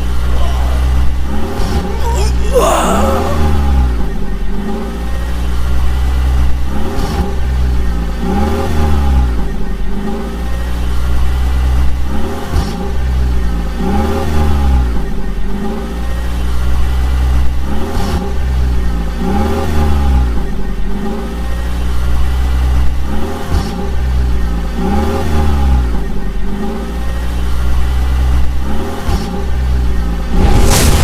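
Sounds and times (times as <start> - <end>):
heavy vehicle engine revving: 3.2 - 27.0.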